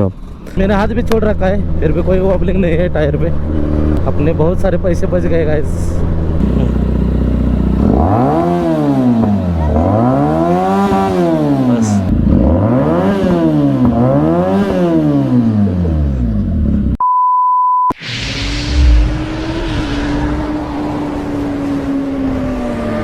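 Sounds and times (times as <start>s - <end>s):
motorcycle engine revving: 0.0s - 17.0s, 18.6s - 23.0s
electronic beep tone: 17.0s - 18.0s.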